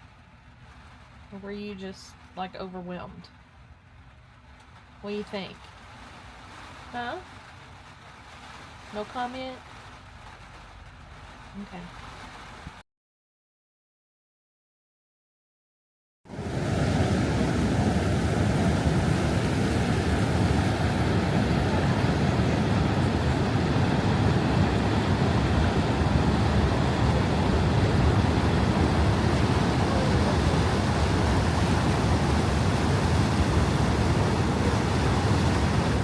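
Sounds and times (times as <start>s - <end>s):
waterfall rushing: 16.3s - 36.0s.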